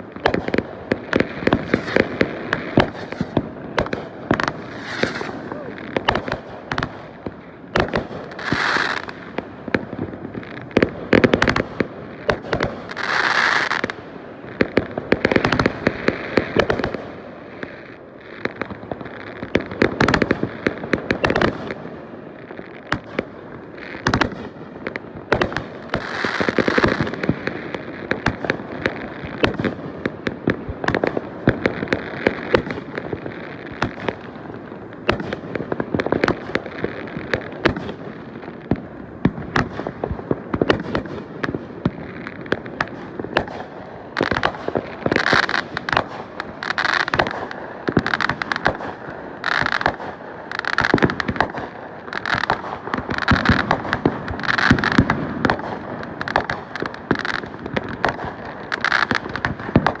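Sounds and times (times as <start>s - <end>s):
fireworks bangs and crackles: 0.0s - 60.0s
fireworks hissing bursts: 1.4s - 7.6s.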